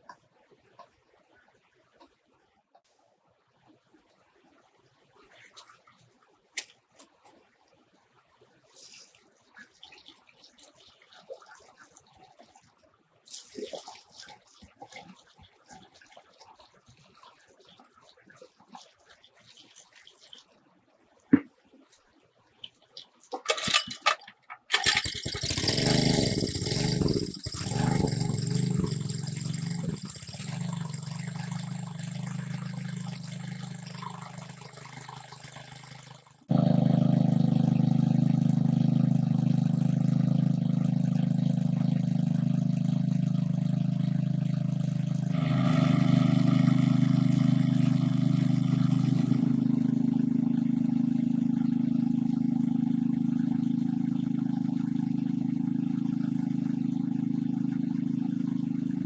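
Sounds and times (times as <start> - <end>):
motor sputtering and running: 23.5 - 59.0
steady engine drone: 24.7 - 59.0.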